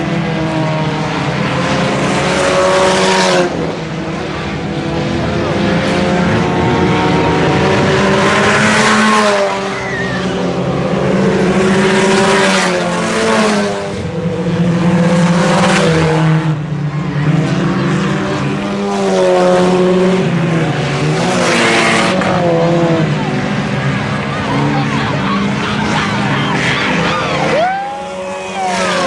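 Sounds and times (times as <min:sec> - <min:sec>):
race car engines revving: 0:00.0 - 0:29.0.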